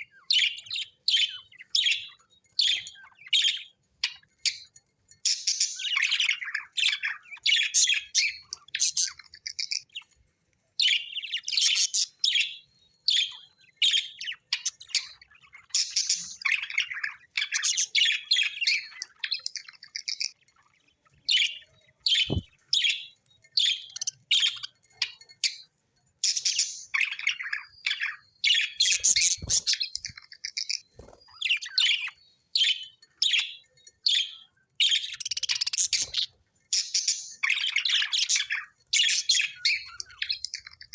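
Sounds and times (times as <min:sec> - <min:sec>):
budgerigars chirping: 0:10.9 - 0:25.6, 0:26.2 - 0:40.9.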